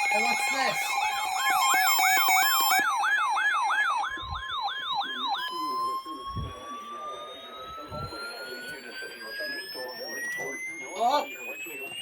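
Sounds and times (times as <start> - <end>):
electronic siren yelping: 0.0 - 12.0
rising siren tone: 0.0 - 12.0.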